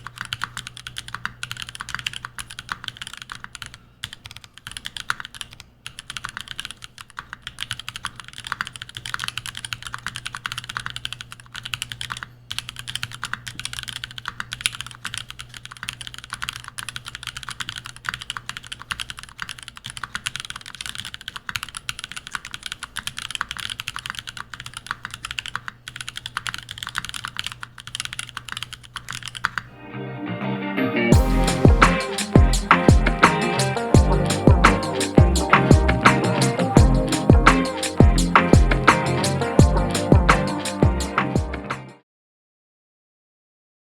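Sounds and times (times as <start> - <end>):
fast mechanical keyboard typing: 0.0 - 29.7.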